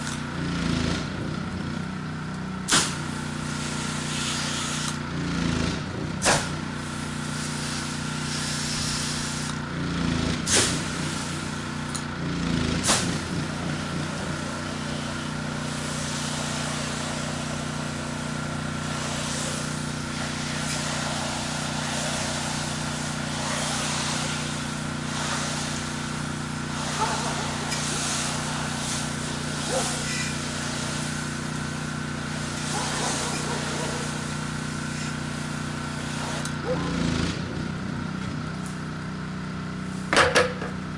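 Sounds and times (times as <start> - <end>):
pressure washer engine running: 0.0 - 40.9
water spraying with a hiss: 2.6 - 5.2, 6.2 - 9.7, 10.4 - 12.2, 12.8 - 36.7, 39.8 - 40.2.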